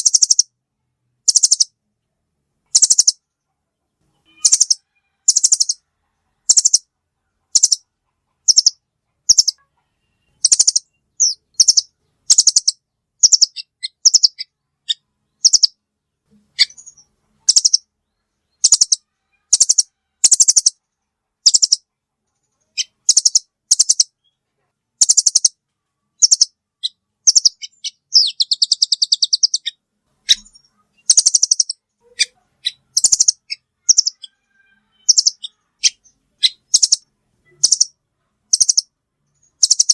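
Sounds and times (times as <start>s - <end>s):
bird chattering trills: 0.0s - 0.5s, 1.3s - 1.7s, 2.7s - 3.2s, 4.2s - 5.8s, 6.4s - 6.8s, 7.5s - 7.8s, 8.4s - 9.6s, 10.2s - 15.8s, 16.6s - 17.8s, 18.6s - 20.8s, 21.4s - 21.9s, 22.7s - 24.2s, 25.0s - 25.6s, 26.2s - 38.9s, 39.5s - 39.9s.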